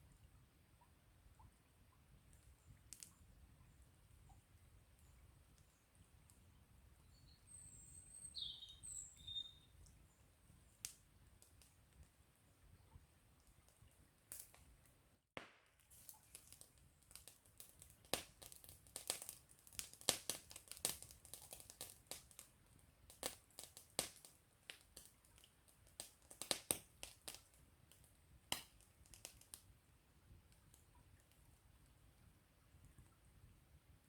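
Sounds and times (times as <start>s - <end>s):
campfire crackling and popping: 2.3s - 3.2s, 10.8s - 12.1s, 13.6s - 14.7s, 15.4s - 31.6s.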